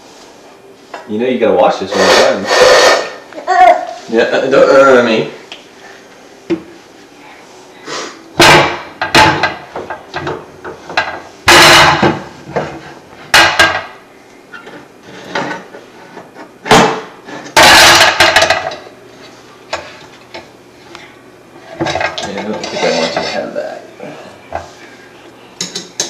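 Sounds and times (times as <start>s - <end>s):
kitchenware banging and clattering: 8.4s - 14.0s, 16.6s - 18.8s, 21.8s - 23.5s, 25.6s - 26.0s.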